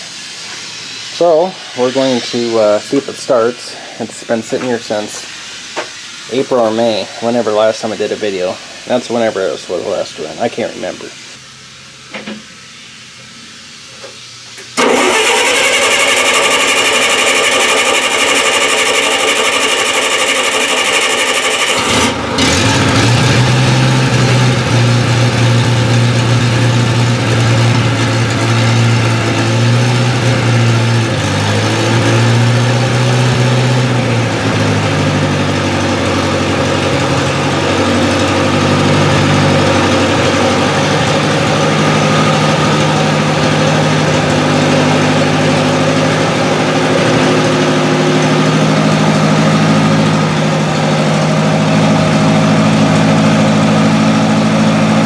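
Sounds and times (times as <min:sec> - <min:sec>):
gas engine running unevenly: 0:14.0 - 0:55.0
starter cranking engine: 0:14.6 - 0:45.0.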